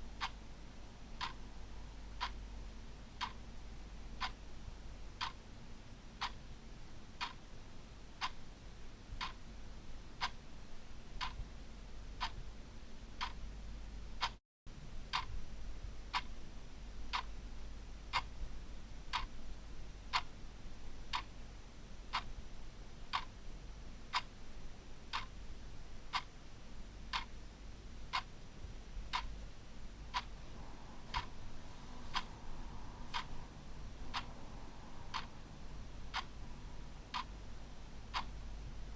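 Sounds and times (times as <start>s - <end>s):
clock ticking: 0.2s - 0.4s, 1.2s - 1.4s, 2.2s - 2.4s, 3.2s - 3.4s, 5.2s - 5.4s, 7.2s - 7.4s, 13.2s - 13.4s, 15.1s - 15.4s, 19.1s - 19.3s, 23.1s - 23.3s, 25.1s - 25.3s, 27.1s - 27.3s, 30.1s - 38.4s.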